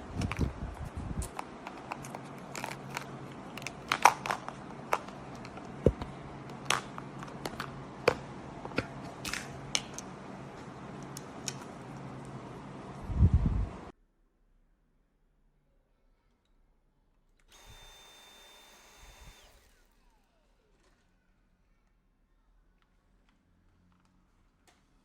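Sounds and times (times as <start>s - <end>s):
plastic packaging crinkling: 0.0s - 12.6s
faint steady hum: 0.0s - 13.9s.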